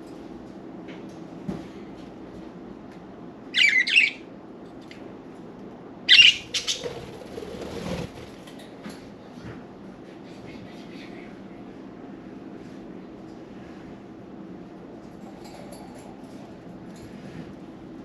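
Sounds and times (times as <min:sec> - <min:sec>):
budgerigars squawking: 0:03.6 - 0:04.2, 0:06.1 - 0:06.8.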